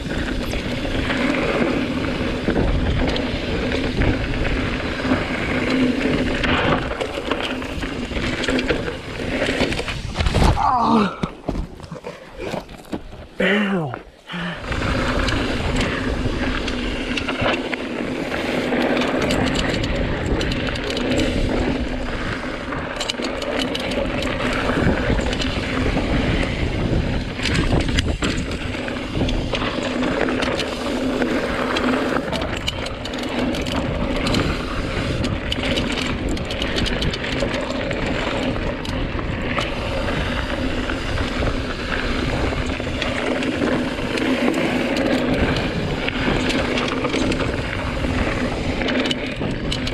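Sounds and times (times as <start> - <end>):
wind on microphone: 0.0 - 13.3, 23.8 - 49.9
bike clicks and rattles: 0.0 - 49.9
bike tyres rumbling on dirt: 0.0 - 49.9.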